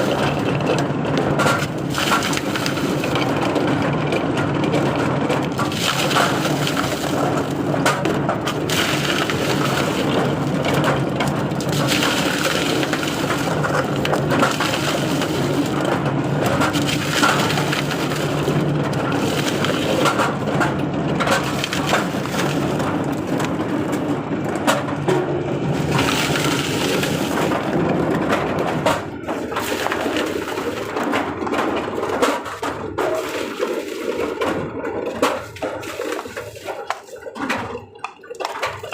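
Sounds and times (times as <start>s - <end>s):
machine tearing coconut husks: 0.0s - 38.9s.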